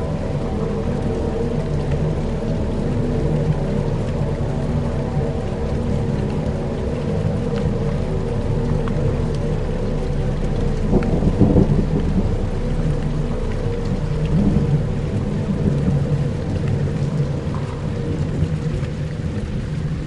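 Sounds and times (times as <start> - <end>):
low sustained drones: 0.0 - 20.0
rain-like hiss: 0.0 - 20.0
thunder rumbles: 6.4 - 20.0.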